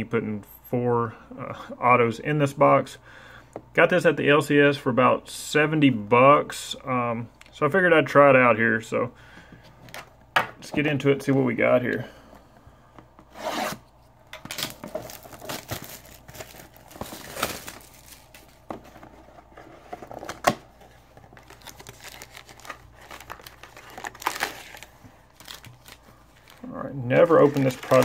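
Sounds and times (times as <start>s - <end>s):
wrapping tearing and crinkling: 14.4s - 28.0s.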